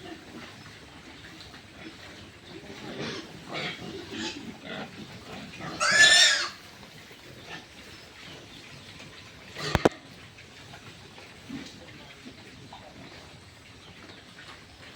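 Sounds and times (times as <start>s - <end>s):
pigs grunting: 0.0s - 8.7s, 9.4s - 14.9s
pig squealing: 2.9s - 6.7s, 9.6s - 9.9s.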